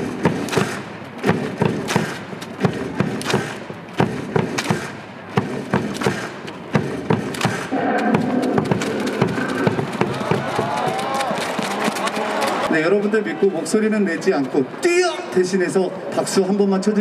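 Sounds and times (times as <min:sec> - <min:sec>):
rhythmic thuds and claps: 0:00.0 - 0:12.7
low crowd hum: 0:00.0 - 0:17.0.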